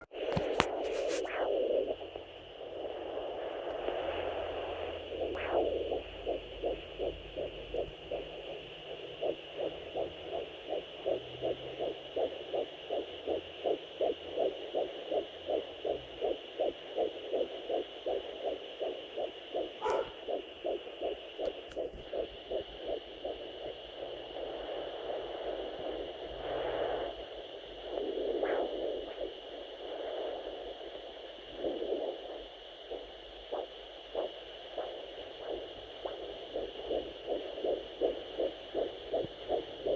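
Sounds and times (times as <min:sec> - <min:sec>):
fast whooshing heartbeat pulses: 0:00.0 - 0:39.9.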